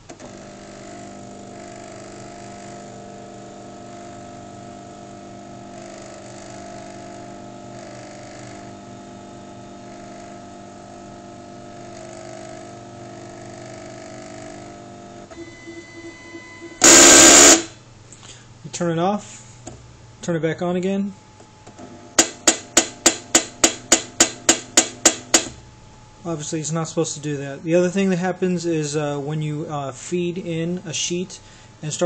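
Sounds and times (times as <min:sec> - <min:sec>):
cutting machine motor whining: 0:00.2 - 0:17.8.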